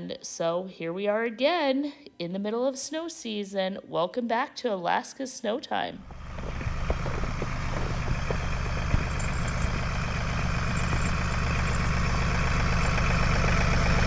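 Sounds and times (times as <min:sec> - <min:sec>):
tractor engine running: 0:06.0 - 0:14.0.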